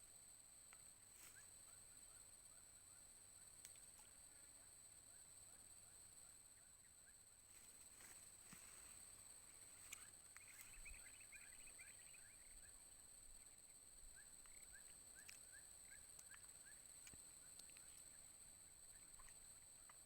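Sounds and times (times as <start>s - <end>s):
bird chirping: 9.9s - 18.1s.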